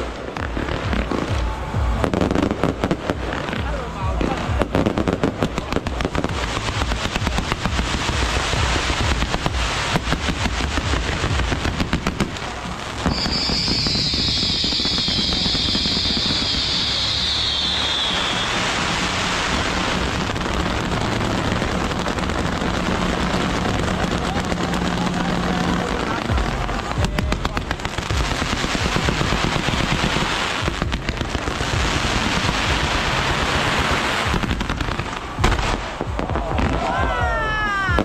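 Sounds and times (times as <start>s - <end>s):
firecrackers crackling: 0.0s - 38.0s
high whistle sliding downward: 13.1s - 18.9s.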